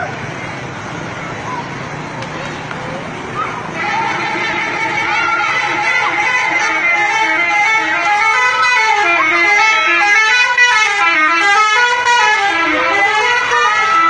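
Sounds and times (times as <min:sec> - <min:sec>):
multi-tone musical bus horn: 0:03.6 - 0:14.0.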